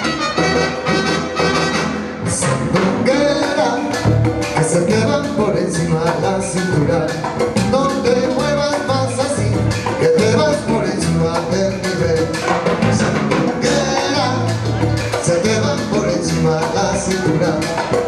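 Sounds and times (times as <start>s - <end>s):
salsa music with brass: 0.0s - 18.0s.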